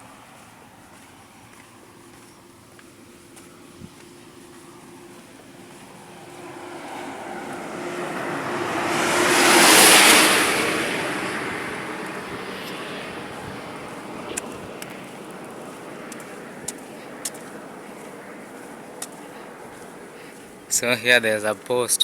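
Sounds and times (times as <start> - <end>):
vehicle passing by: 0.0 - 21.6.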